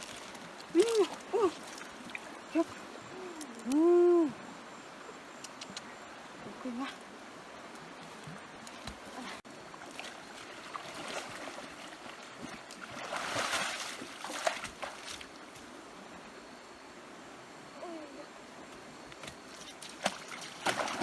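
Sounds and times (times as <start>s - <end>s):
water sloshing and splashing: 0.0s - 2.9s, 6.8s - 15.8s, 19.1s - 21.0s.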